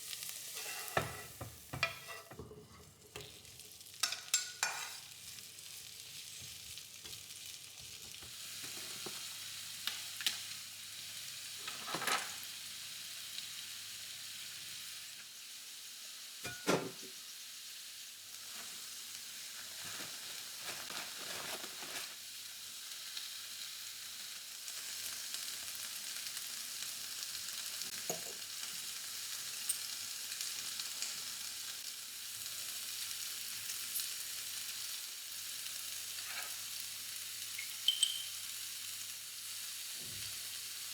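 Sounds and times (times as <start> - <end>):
food sizzling in frying pan: 0.0 - 40.9
utensil scraping and knocking pan: 0.6 - 2.8.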